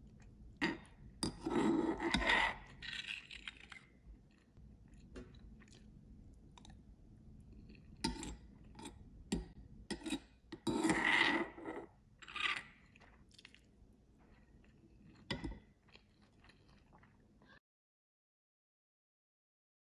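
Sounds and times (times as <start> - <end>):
chewing and crunching: 2.0 - 6.8, 7.4 - 9.0, 12.2 - 17.3.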